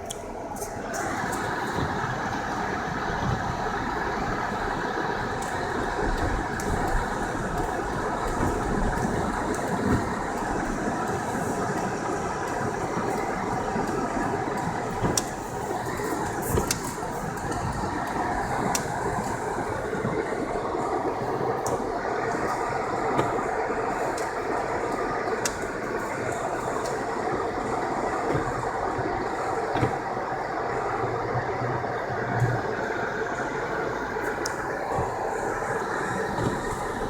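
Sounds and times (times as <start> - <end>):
wind noise: 1.0 - 37.0
tyres rumbling: 5.6 - 37.0
car engine: 33.4 - 37.0.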